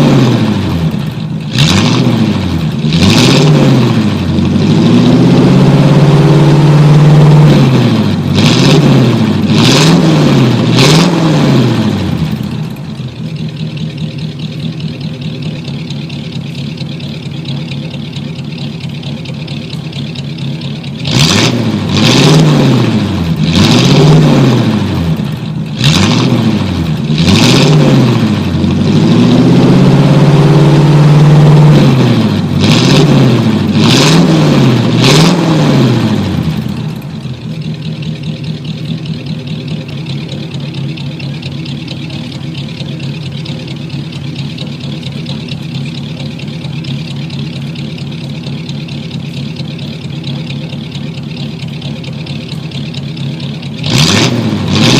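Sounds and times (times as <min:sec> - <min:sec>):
car engine revving and idling: 0:00.0 - 0:54.9.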